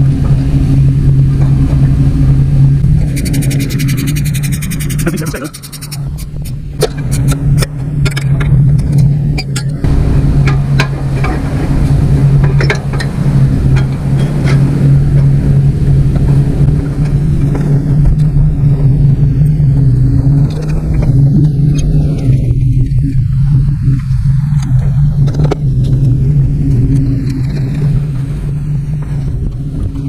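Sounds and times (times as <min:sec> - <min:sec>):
small engine running: 0:02.8 - 0:07.6.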